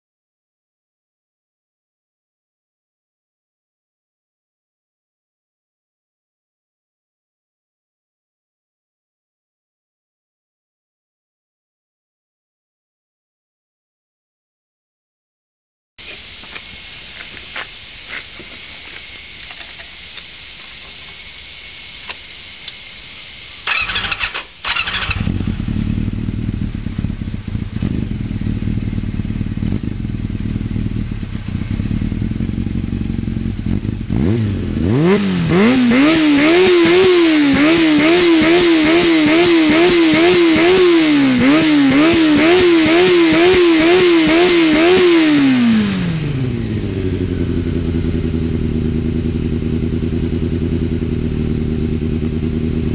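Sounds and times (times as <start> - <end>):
motorcycle engine starting and revving: 21.0 - 52.9.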